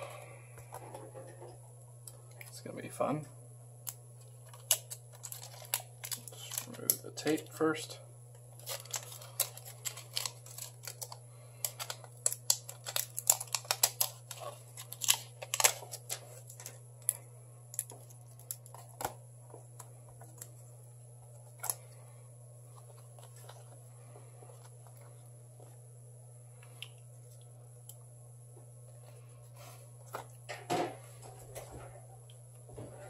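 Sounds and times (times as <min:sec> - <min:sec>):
steady low hum: 0:00.0 - 0:33.0
adhesive tape clicks and crinkles: 0:03.8 - 0:07.4, 0:08.6 - 0:19.2.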